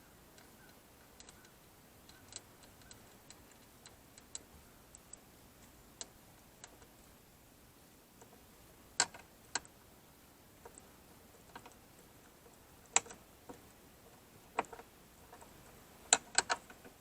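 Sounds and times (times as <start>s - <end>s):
small metal parts clicking: 12.5s - 17.0s.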